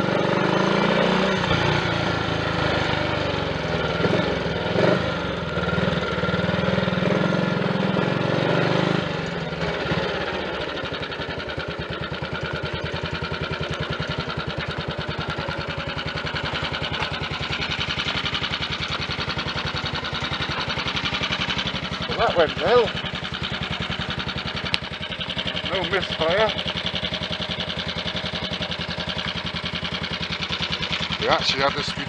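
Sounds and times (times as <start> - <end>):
motorcycle engine running: 0.0 - 32.0
road and wind noise: 0.0 - 32.0.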